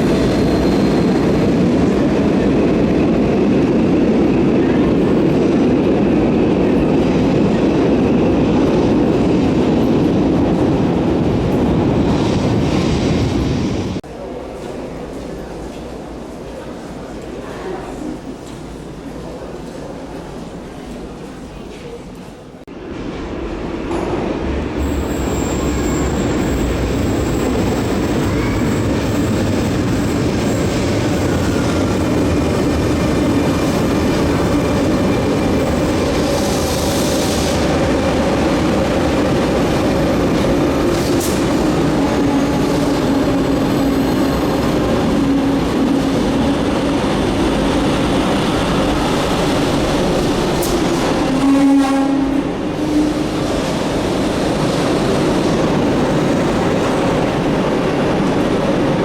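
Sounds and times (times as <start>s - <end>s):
train wheels squealing: 0.0s - 1.6s, 24.8s - 31.4s
electric train hum and rolling: 0.0s - 59.0s.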